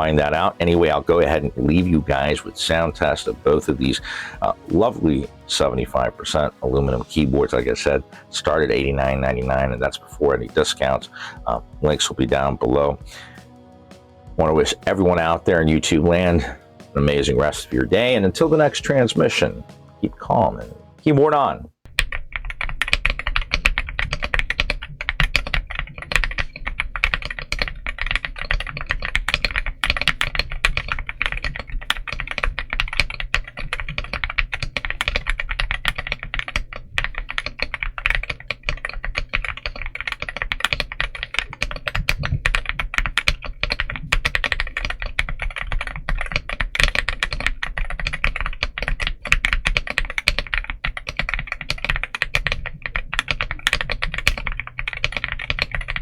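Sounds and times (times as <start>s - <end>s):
mechanical keyboard typing: 21.9s - 56.0s.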